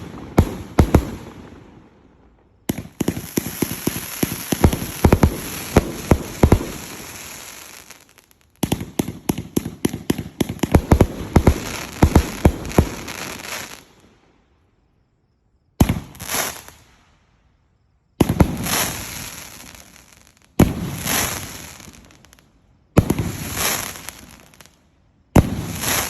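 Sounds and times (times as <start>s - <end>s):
fireworks popping and crackling: 0.0s - 1.6s, 2.7s - 14.0s, 15.8s - 16.8s, 18.2s - 22.4s, 23.0s - 24.8s, 25.4s - 26.0s.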